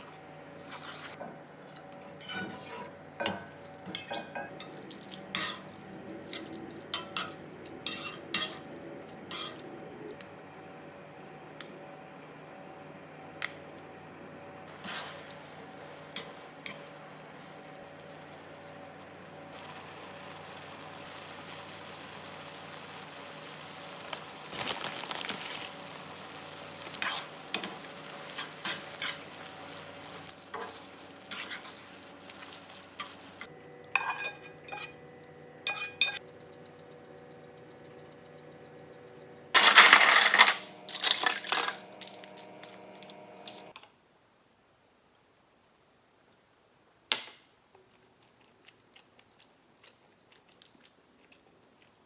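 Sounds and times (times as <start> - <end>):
utensil stirring and scraping a pan: 0.0 - 10.1, 14.7 - 22.4, 24.5 - 43.7
cookware clattering: 1.1 - 4.8, 34.0 - 35.0, 35.7 - 36.2, 39.6 - 43.7
cookware clinking: 1.7 - 4.8, 5.4 - 5.7, 34.0 - 35.0, 35.6 - 36.2, 39.6 - 43.7
steady hum: 33.0 - 43.7.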